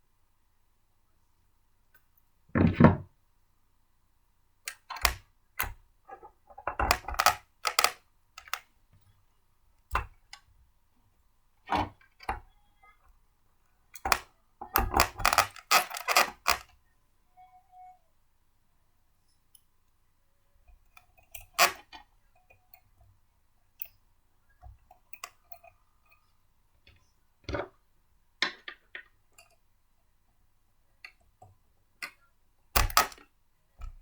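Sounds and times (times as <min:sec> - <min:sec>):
blender parts clicking and knocking: 0:06.2 - 0:08.6, 0:14.0 - 0:16.7, 0:32.8 - 0:33.2.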